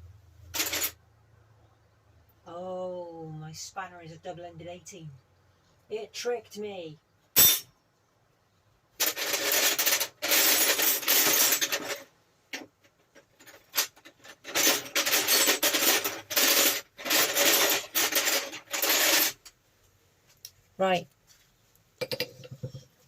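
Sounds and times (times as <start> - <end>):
spanner clinking and scraping on metal: 0.5 - 1.0, 7.4 - 7.7, 9.0 - 19.5.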